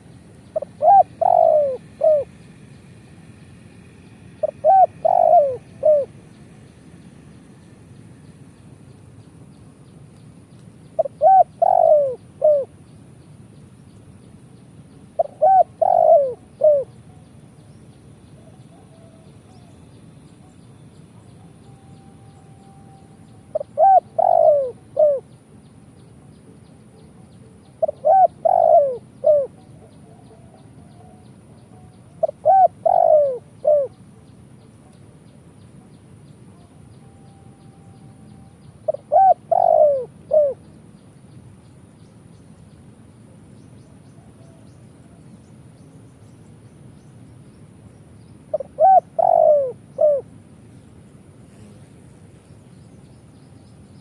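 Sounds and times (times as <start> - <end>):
dove cooing: 0.0 - 2.3, 4.4 - 6.2, 11.0 - 12.8, 15.2 - 17.3, 18.4 - 19.7, 21.4 - 25.3, 26.4 - 34.0, 36.5 - 40.7, 44.1 - 45.2, 48.5 - 50.3.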